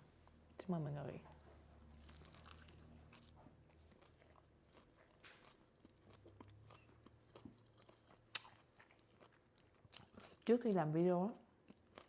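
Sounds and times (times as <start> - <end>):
crunchy chewing: 1.3 - 10.5.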